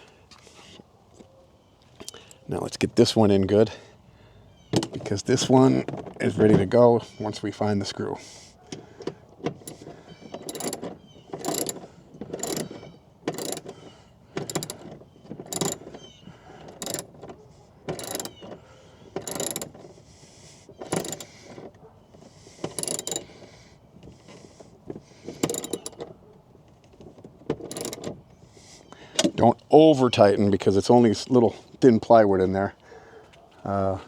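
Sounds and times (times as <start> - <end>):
hand ratchet clicking: 9.5 - 16.0, 16.7 - 17.2, 17.9 - 18.5, 19.2 - 19.9, 20.8 - 21.6, 22.6 - 23.5, 25.2 - 26.1, 27.6 - 28.1.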